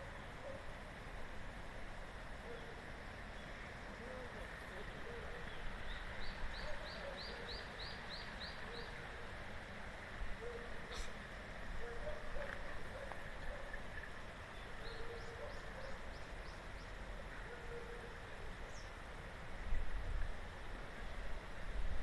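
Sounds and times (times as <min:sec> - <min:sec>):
distant birdsong: 0:02.3 - 0:19.2.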